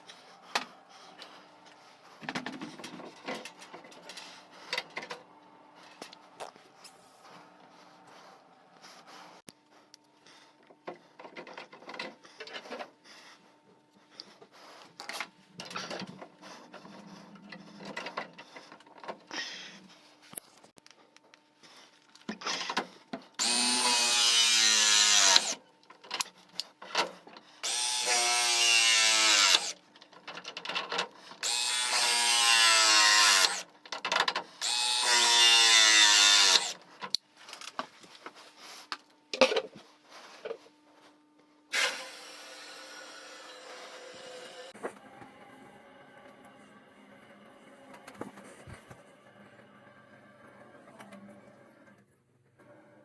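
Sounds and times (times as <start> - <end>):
handheld power tool motor: 22.2 - 37.8, 41.7 - 44.8.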